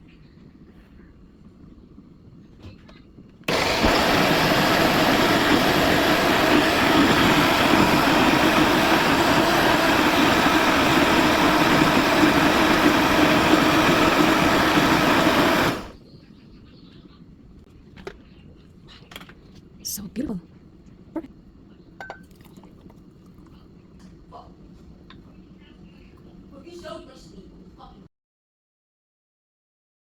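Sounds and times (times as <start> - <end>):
electric blender motor running: 3.5 - 16.0.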